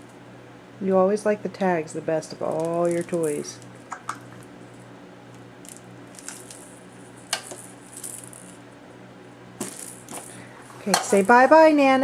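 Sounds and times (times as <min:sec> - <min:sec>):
steady low hum: 0:00.0 - 0:12.0
toy clicks and rattles: 0:02.5 - 0:04.0, 0:05.7 - 0:08.6, 0:09.6 - 0:11.5.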